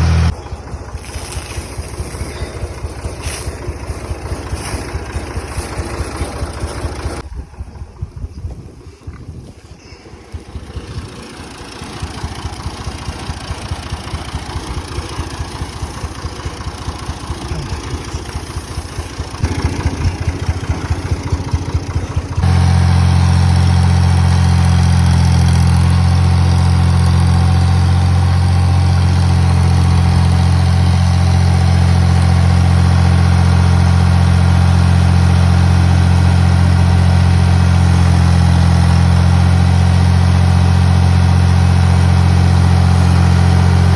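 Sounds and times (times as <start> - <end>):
engine chugging: 0.0 - 43.9.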